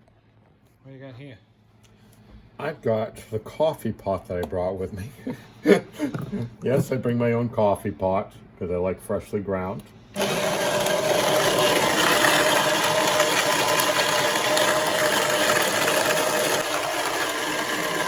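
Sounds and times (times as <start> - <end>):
electric coffee grinder whirring: 10.2 - 18.0.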